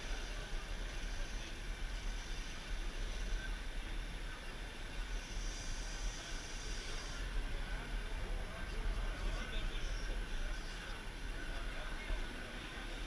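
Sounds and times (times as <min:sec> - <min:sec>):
faint high whine: 0:00.0 - 0:13.0.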